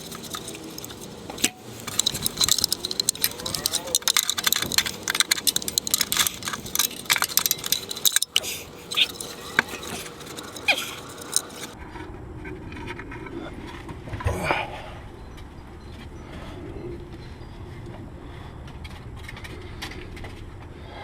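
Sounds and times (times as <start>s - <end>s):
metal parts clinking: 0.0s - 11.8s
ratchet wrench clicking: 0.0s - 11.8s.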